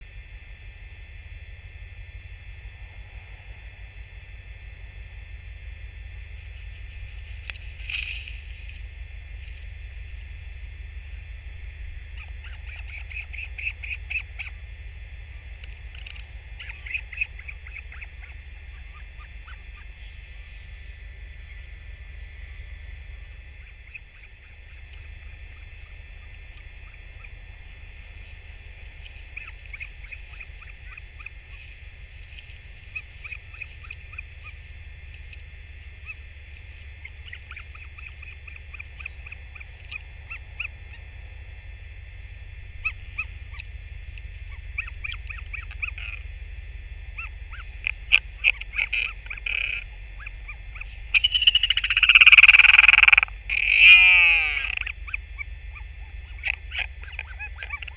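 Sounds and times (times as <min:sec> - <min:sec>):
wind rumble on microphone: 0:00.0 - 0:53.6
albatross clattering calls: 0:11.7 - 0:20.5, 0:23.2 - 0:57.9.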